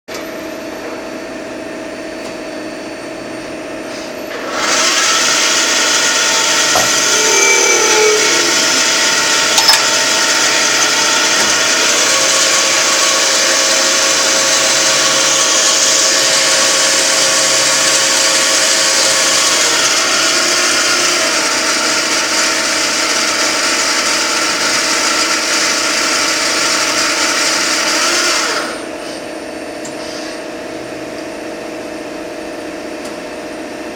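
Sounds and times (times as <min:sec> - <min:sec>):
machine cutting grinding noise: 0:04.4 - 0:28.8
cnc machine motor hum: 0:04.9 - 0:28.8.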